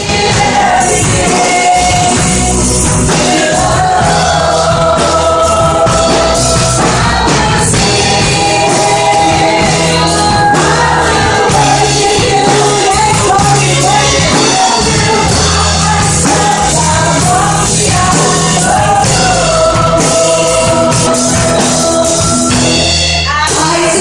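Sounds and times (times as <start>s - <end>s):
band accompaniment: 0.0s - 24.0s
person singing worship song: 0.0s - 24.0s.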